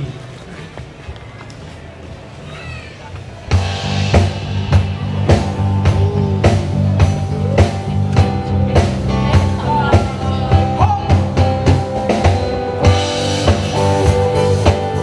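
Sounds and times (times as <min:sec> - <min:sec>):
bass guitar: 0:03.5 - 0:15.0
drum kit beat: 0:03.5 - 0:15.0
live rock band playing: 0:03.5 - 0:15.0
gliding lead melody: 0:03.6 - 0:15.0.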